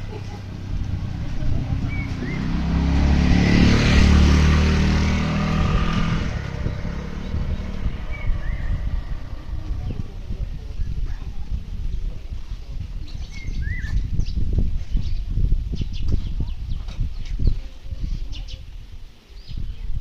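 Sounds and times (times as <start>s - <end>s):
motor vehicle passing by: 0.0s - 10.7s.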